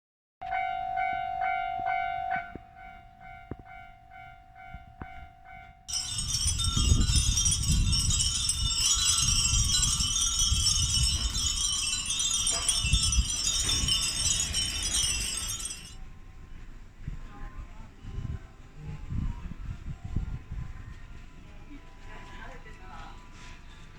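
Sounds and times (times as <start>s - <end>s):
sustained ringing chime tone: 0.4s - 16.0s
wind chimes jingling: 0.5s - 16.0s
low rumble of wind: 0.6s - 23.9s.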